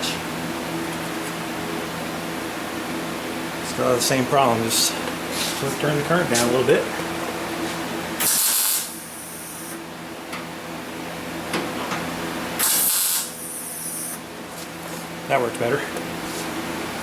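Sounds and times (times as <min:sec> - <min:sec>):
welding arc crackling: 0:08.2 - 0:09.8, 0:12.6 - 0:14.2.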